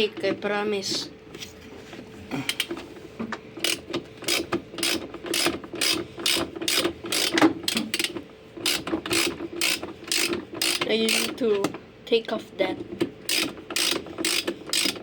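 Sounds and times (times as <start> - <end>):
ratchet tool clicking: 3.6 - 11.4, 13.2 - 15.0.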